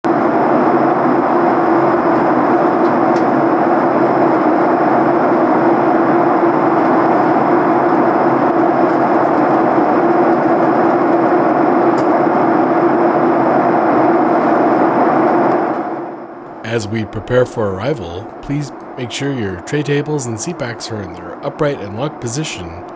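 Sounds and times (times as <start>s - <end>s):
low hum: 16.5s - 22.9s.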